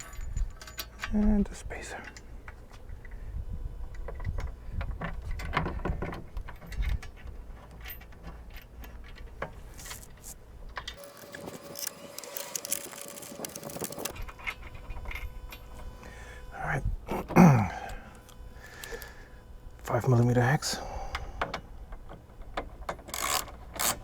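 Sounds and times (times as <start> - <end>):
small metal hardware clinking: 0.0 - 1.3.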